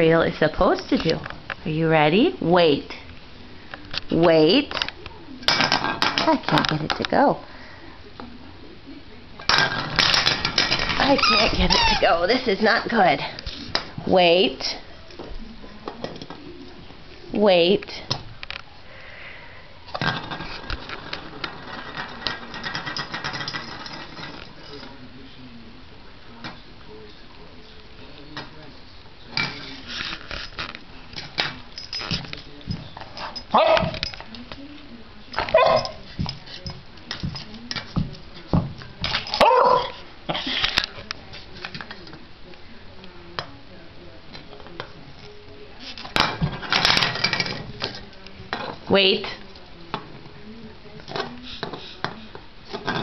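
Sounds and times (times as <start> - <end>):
dreidel clattering while spinning: 20.0 - 24.5
puppy barking: 33.6 - 33.9, 35.5 - 36.0, 39.4 - 40.0.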